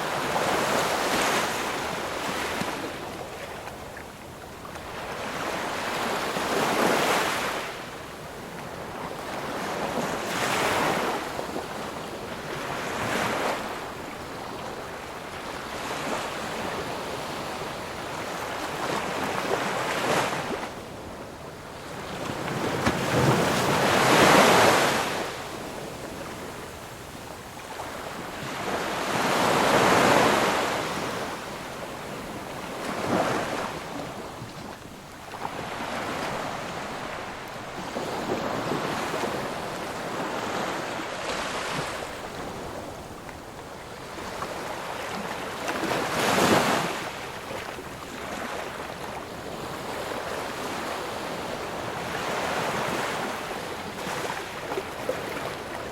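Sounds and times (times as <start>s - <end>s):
ocean waves breaking: 21.8s - 26.6s, 27.8s - 55.9s.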